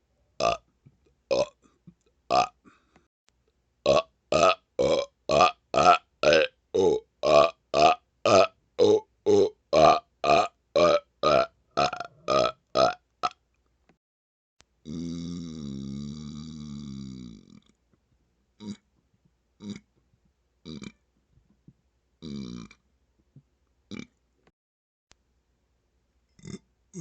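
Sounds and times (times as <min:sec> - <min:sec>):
man burping: 0:01.3 - 0:01.6, 0:02.3 - 0:02.6, 0:03.9 - 0:13.4, 0:14.8 - 0:17.7, 0:18.6 - 0:18.8, 0:19.6 - 0:19.9, 0:20.7 - 0:21.0, 0:22.2 - 0:22.8, 0:23.9 - 0:24.1, 0:26.4 - 0:27.0.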